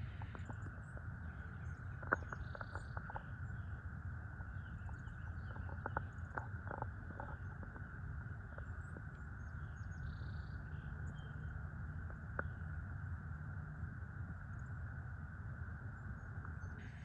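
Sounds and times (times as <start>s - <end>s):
small irregular clicks: 0.0s - 3.8s, 4.4s - 9.3s
faint bird chirps: 0.0s - 7.8s, 8.4s - 12.7s, 16.0s - 17.0s
low wind rumble: 0.0s - 17.0s.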